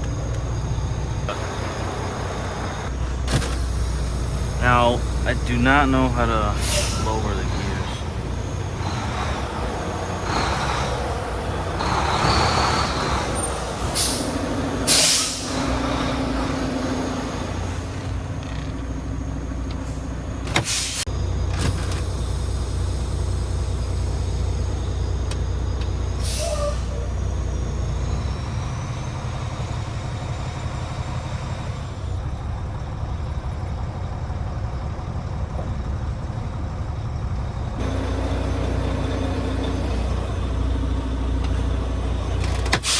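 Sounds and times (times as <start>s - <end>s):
heavy truck idling: 0.0s - 42.9s
air hissing: 1.3s - 16.5s, 20.5s - 25.1s, 41.8s - 42.9s.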